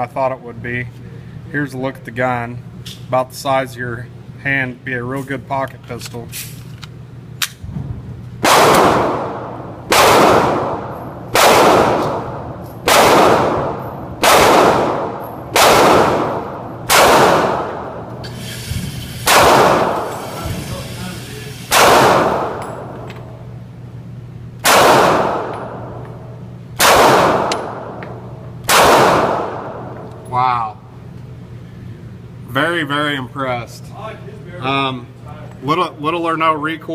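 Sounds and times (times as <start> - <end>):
pistol shots: 8.4 - 18.2, 19.2 - 20.2, 21.7 - 23.3, 24.6 - 26.1, 26.8 - 30.0.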